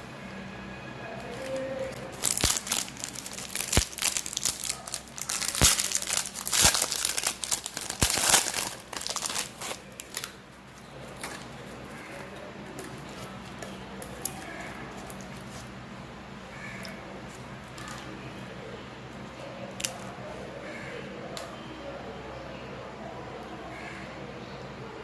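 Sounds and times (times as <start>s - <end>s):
plastic wrapper crinkling: 1.2s - 11.8s.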